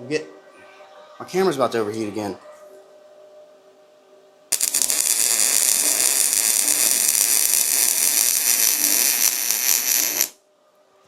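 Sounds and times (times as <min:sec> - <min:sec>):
welder hissing: 0:04.5 - 0:10.4.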